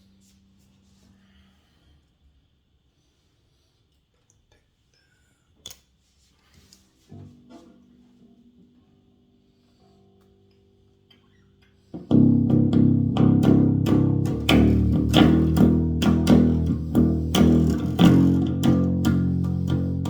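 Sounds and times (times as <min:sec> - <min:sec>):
electric bass guitar notes ringing: 0:12.0 - 0:20.0.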